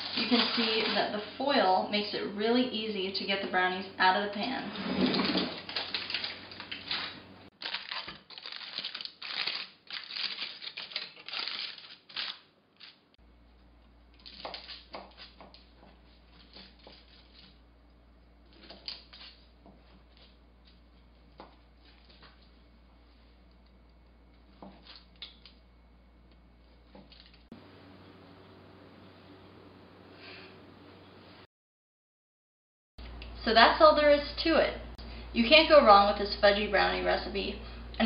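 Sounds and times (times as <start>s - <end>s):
aluminium foil crinkling: 0.0s - 1.3s, 5.5s - 13.0s, 14.1s - 17.6s, 18.5s - 22.6s, 26.9s - 27.5s.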